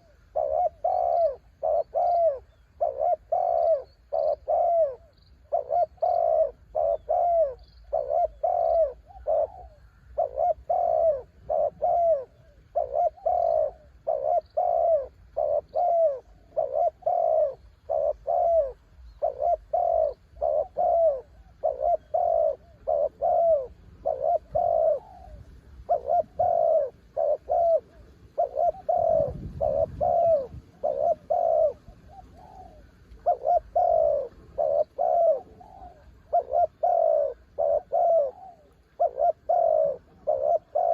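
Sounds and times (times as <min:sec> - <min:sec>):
dove cooing: 0:00.0 - 0:40.9
small birds chirping: 0:00.0 - 0:40.9
wind rumble: 0:28.8 - 0:32.2.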